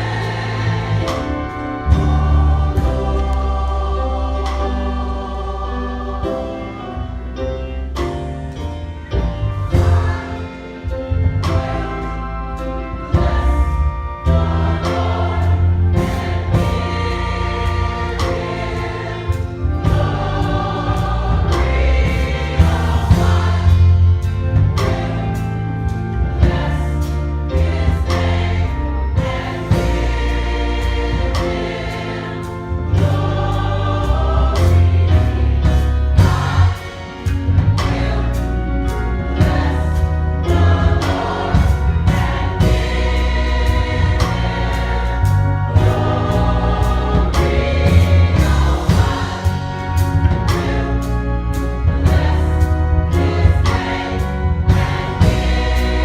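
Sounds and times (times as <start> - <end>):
heavy bass line: 0.0 - 6.2, 8.8 - 56.0
choir singing in parts: 0.0 - 56.0
steady beat: 13.1 - 56.0.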